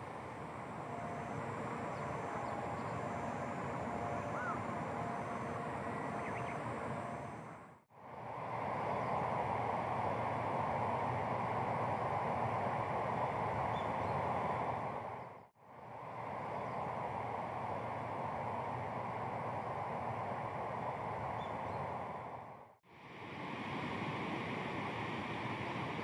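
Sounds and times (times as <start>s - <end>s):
outdoor background noise: 0.0s - 26.0s
faint bird-like chirps: 4.1s - 4.7s.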